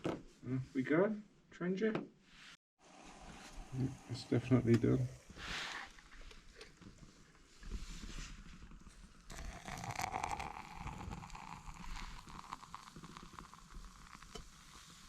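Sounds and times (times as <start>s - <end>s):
food sizzling in a pan: 9.4s - 15.0s.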